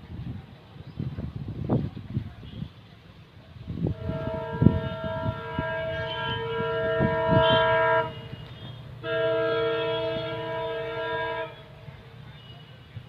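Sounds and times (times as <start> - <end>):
locomotive horn blasts: 3.8 - 13.0.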